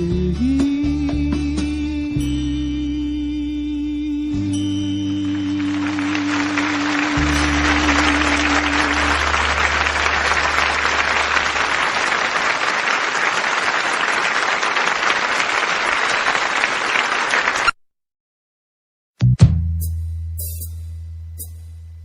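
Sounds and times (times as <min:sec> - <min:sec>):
audience applauding: 0:05.4 - 0:17.8.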